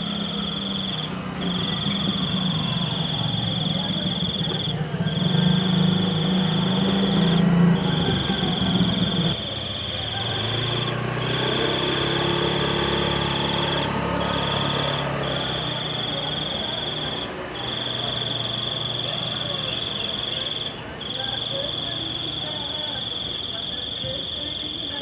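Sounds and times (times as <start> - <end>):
high-pitched insect trill: 0.0 - 25.0
low engine-like hum: 0.0 - 25.0.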